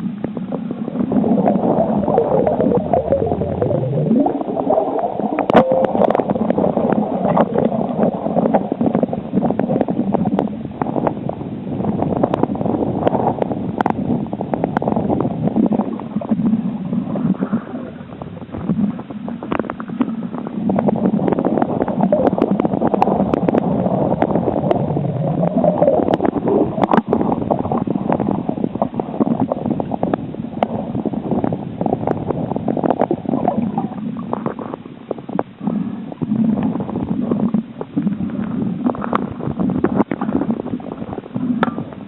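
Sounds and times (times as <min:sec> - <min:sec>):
underwater rushing and gurgling: 0:00.0 - 0:42.0.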